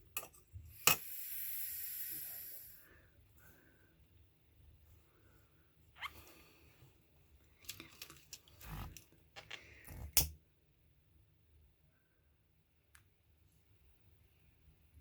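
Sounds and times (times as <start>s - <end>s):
small objects clicking and scraping: 7.6s - 10.3s.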